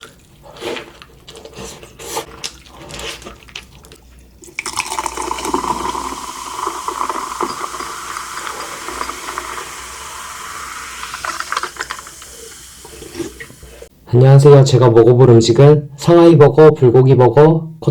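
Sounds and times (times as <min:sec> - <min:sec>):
liquid pouring: 0:03.2 - 0:13.9.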